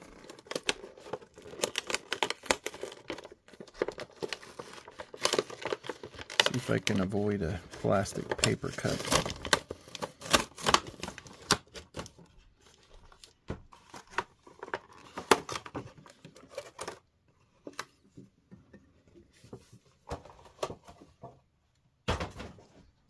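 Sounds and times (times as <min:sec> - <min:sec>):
plastic packaging tearing: 0:00.0 - 0:17.0.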